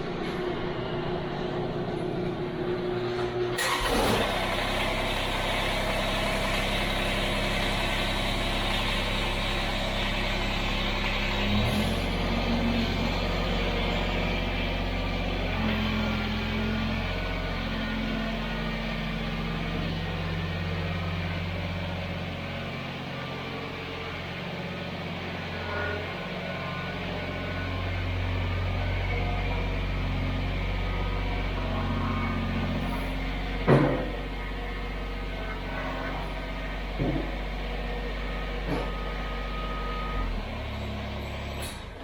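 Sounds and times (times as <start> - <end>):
tractor diesel engine running: 0.0 - 42.0
sharp clunk: 33.7 - 34.2.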